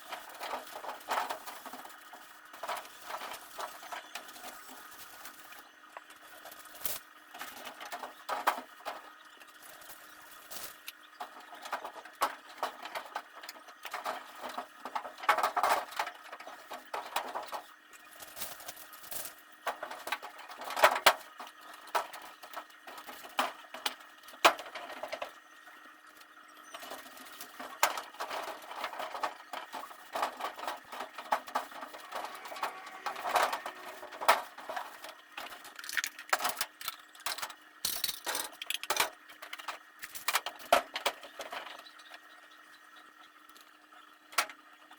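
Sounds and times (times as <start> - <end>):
household items clattering: 26.8 - 41.8.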